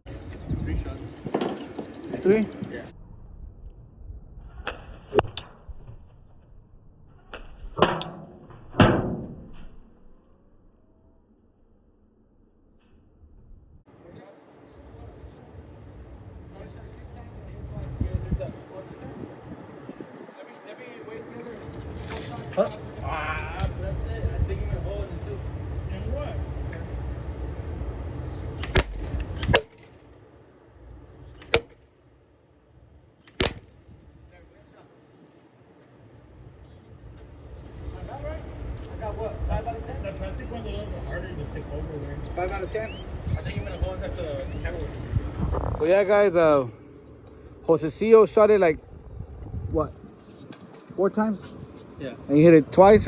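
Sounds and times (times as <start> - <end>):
airsoft rifle shots: 28.6 - 30.0, 31.4 - 31.8, 33.2 - 33.8.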